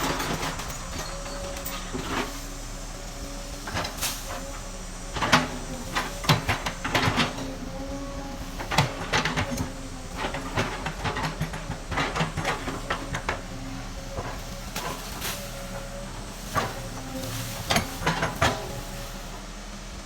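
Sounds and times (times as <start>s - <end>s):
metallic clanks and knocks: 0.0s - 2.5s, 8.5s - 19.1s
excavator engine hum: 0.0s - 20.0s.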